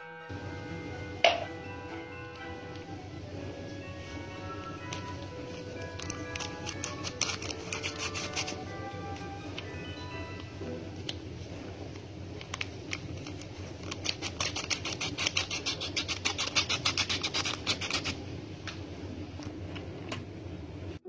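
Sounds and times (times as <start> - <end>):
whisk beating batter in bowl: 5.5 - 8.8, 13.0 - 18.2.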